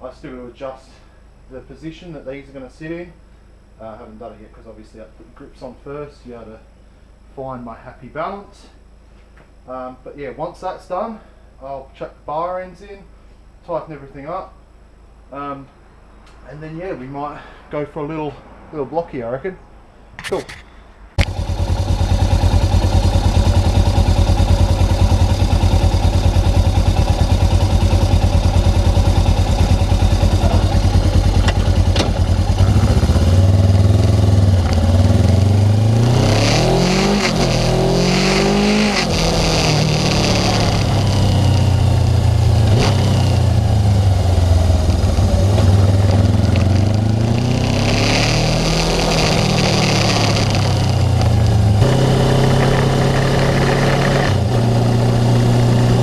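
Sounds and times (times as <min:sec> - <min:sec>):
motorcycle engine revving: 0:21.2 - 0:56.0.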